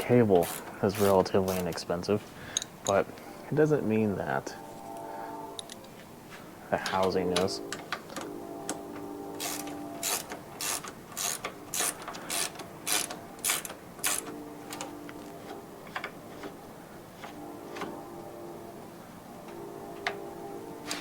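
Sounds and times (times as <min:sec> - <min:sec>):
faint steady hum: 0:00.0 - 0:21.0
hand ratchet clicking: 0:00.4 - 0:01.8, 0:09.4 - 0:14.9.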